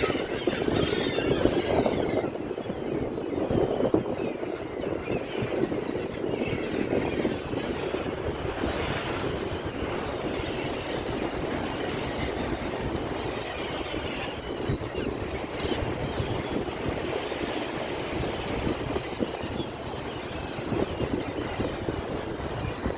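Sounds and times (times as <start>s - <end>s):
sea waves breaking: 5.7s - 21.0s.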